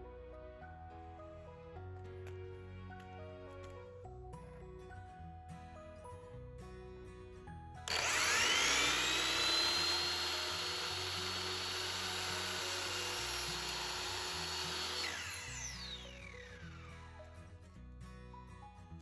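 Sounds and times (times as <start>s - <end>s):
background music: 0.0s - 19.0s
miter saw motor whining: 7.9s - 17.2s.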